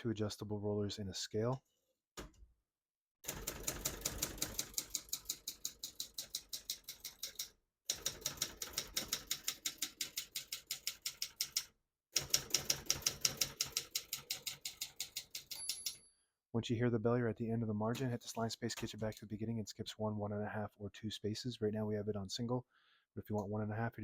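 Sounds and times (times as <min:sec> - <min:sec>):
typewriter clatter: 0:03.3 - 0:16.0.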